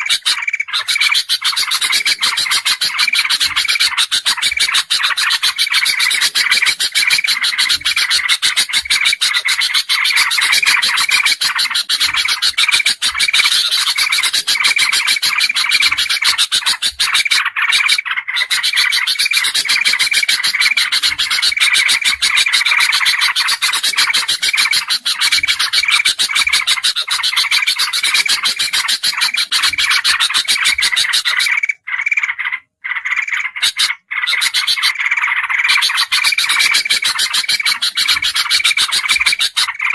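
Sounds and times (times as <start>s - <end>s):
bulbuls chattering: 0.0s - 39.9s.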